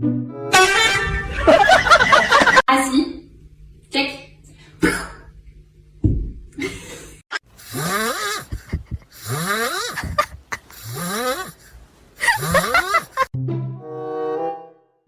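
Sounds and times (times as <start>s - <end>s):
brass and timpani music: 0.0s - 1.6s
loud snoring: 7.6s - 13.3s.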